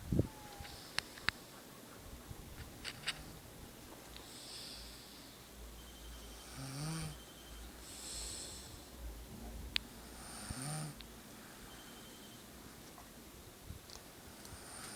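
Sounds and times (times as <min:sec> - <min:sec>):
airy breaths: 0:04.2 - 0:05.8, 0:07.8 - 0:09.0
person snoring: 0:06.4 - 0:07.2, 0:10.2 - 0:11.0.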